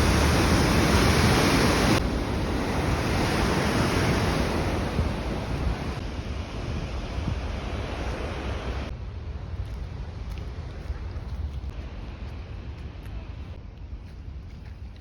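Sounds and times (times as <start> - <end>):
waterfall rushing: 0.0 - 6.2
wind buffeting microphone: 0.0 - 8.9.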